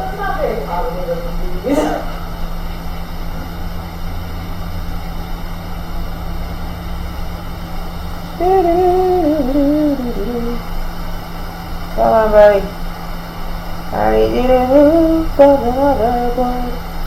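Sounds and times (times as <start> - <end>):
bench equipment hum and hiss: 0.0 - 17.0
person humming a wavering note: 8.4 - 10.6.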